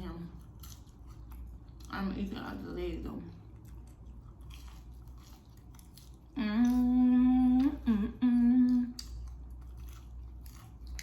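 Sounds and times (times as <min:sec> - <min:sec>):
woman humming with mouth full: 0:06.4 - 0:09.0.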